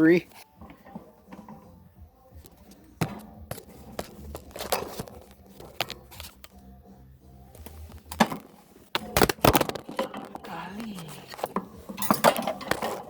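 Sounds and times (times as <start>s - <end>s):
objects knocking on hard surface: 3.0s - 6.0s.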